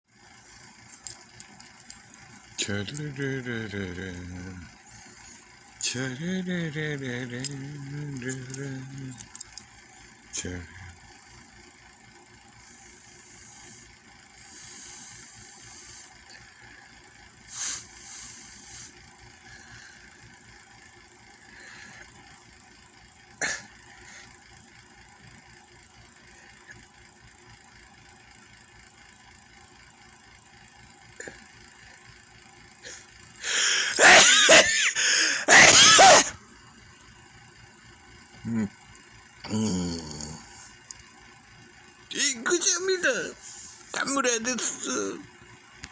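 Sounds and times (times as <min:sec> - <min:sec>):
man sneezing loudly: 0:33.5 - 0:36.4.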